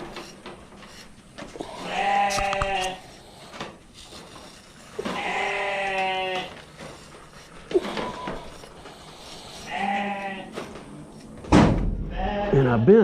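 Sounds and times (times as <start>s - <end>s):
sheep bleating: 1.6s - 3.1s, 5.0s - 6.6s, 9.6s - 10.6s, 12.1s - 13.0s.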